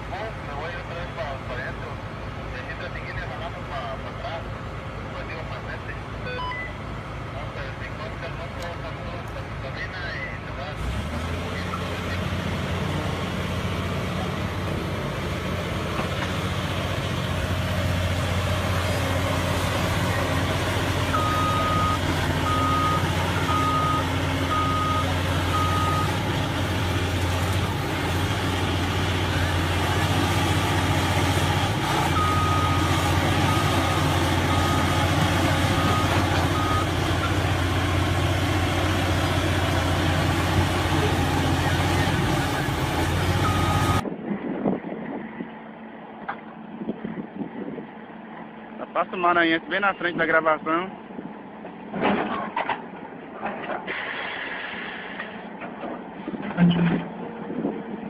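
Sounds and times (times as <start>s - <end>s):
heavy vehicle engine droning: 0.0s - 58.0s
reversing alarm beeps: 6.2s - 6.8s, 21.1s - 26.2s, 32.2s - 35.0s, 35.7s - 36.9s, 43.4s - 44.0s.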